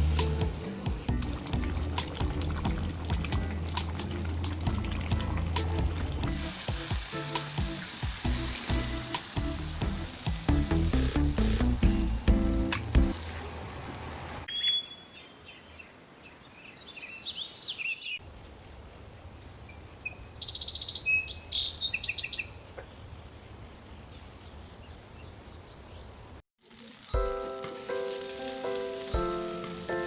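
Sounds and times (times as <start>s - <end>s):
small birds chirping: 19.7s - 23.0s.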